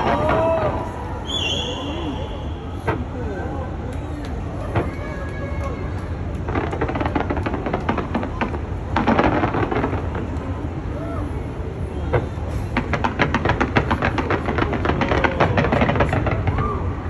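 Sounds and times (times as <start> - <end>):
crowd voices: 0.0 - 17.0
fireworks bangs and crackles: 0.0 - 17.0.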